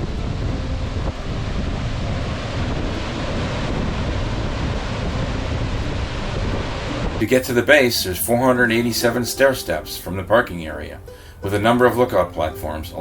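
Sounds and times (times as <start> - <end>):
wind buffeting microphone: 0.0 - 9.4
waterfall rushing: 0.0 - 10.2.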